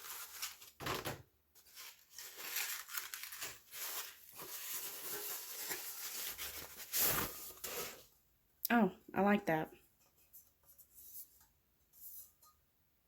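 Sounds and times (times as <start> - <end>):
packaging scraping: 0.0 - 1.0, 1.6 - 8.1
packaging rustling and crinkling: 0.0 - 8.1.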